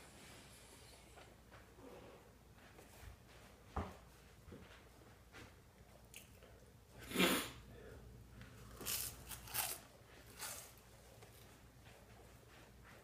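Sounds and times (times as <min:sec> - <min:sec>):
man eating toast: 0:08.6 - 0:10.8.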